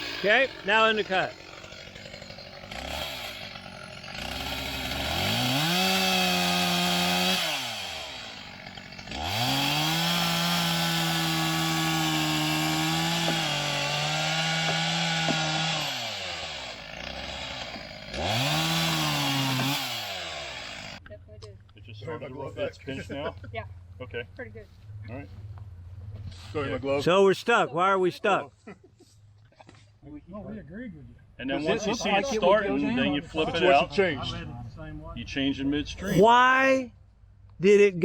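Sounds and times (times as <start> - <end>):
chainsaw idling: 0.0 - 21.0
chainsaw revving into log: 0.0 - 21.0.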